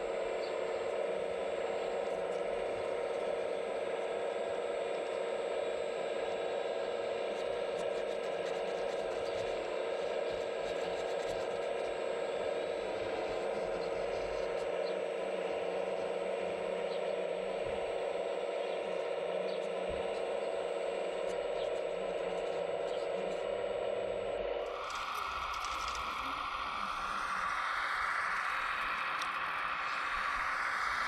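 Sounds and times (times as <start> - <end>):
hydraulic pump whine: 0.0 - 31.0.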